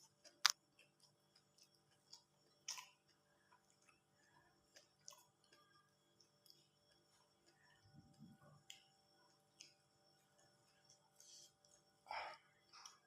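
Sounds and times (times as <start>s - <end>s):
chewing and mouth smacks: 0.0s - 13.0s
faint low hum: 0.0s - 13.0s.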